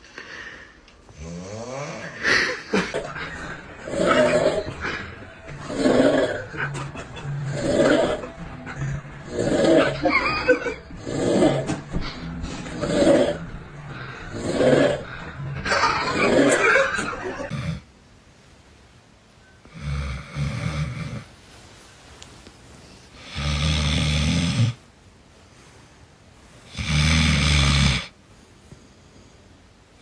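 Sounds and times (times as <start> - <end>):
low rumbling snores: 1.1 - 2.2, 10.9 - 15.4, 17.5 - 17.9, 19.6 - 21.3, 23.1 - 24.8, 26.6 - 28.1.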